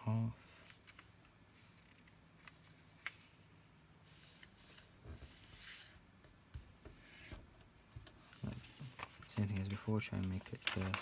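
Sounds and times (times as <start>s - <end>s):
paper rustling while folded: 8.0s - 11.0s.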